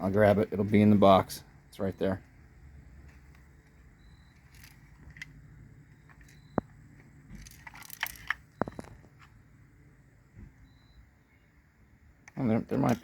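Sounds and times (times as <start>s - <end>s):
plastic model parts clicking: 7.4s - 9.1s.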